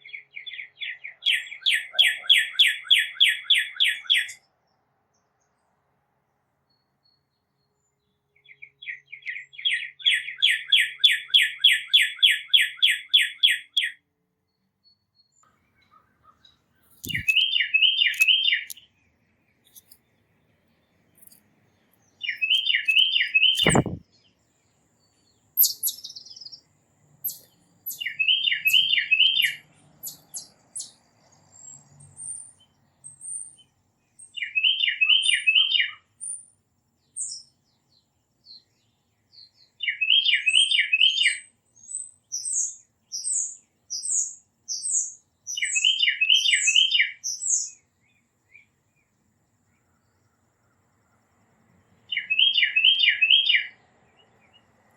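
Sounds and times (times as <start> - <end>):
high thin bird chips: 16.8 - 18.9, 19.6 - 20.0, 21.1 - 21.5, 22.3 - 24.0
sharp click: 17.0 - 17.4, 23.6 - 24.0
titmouse whistling song: 17.0 - 18.8, 22.2 - 24.0, 25.6 - 26.5, 27.2 - 31.0, 39.8 - 47.8, 52.1 - 53.7.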